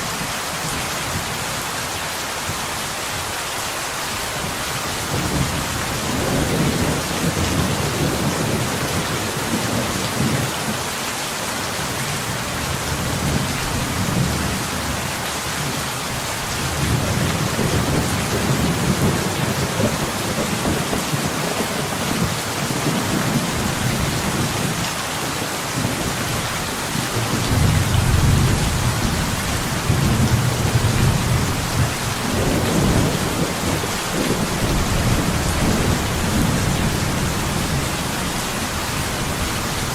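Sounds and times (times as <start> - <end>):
low rolling thunder: 5.0 - 10.8, 16.5 - 39.9.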